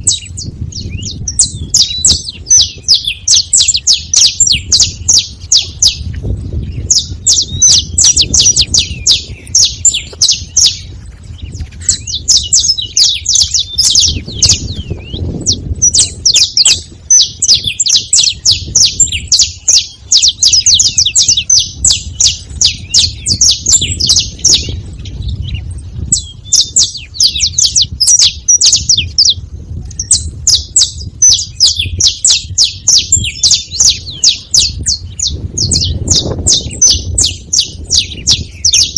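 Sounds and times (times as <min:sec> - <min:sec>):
finches chattering calls: 0:00.0 - 0:38.9.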